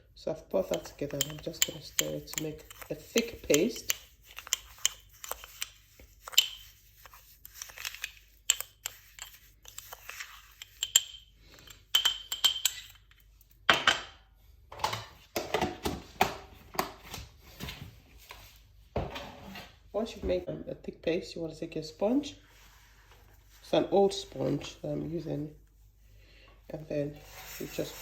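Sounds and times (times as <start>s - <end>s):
spoon clinking and scraping container: 0.6s - 13.2s.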